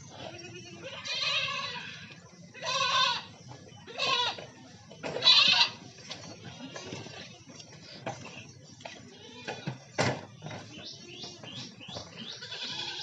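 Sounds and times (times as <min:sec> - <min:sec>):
goats bleating: 0:00.1 - 0:04.5, 0:05.1 - 0:05.8, 0:09.1 - 0:09.8, 0:12.2 - 0:13.0.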